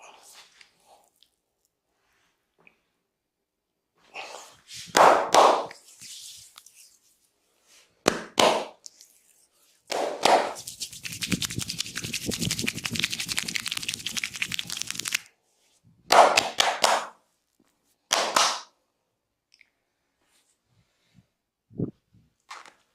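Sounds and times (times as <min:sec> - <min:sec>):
hands slapping body in massage: 0:04.9 - 0:05.9, 0:08.0 - 0:08.8, 0:09.9 - 0:15.2, 0:16.1 - 0:17.2, 0:18.1 - 0:18.7.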